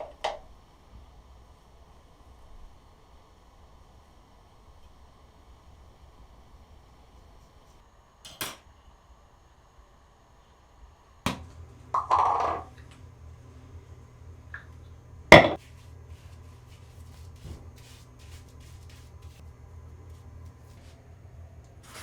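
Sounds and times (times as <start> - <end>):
sharp knocks or bangs: 15.3 - 15.6.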